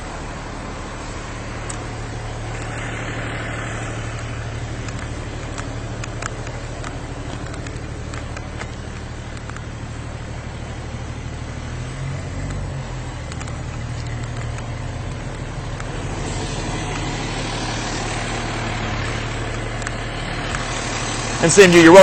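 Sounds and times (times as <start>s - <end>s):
vehicle engine idling: 0.0s - 22.0s
hiss: 16.1s - 18.6s.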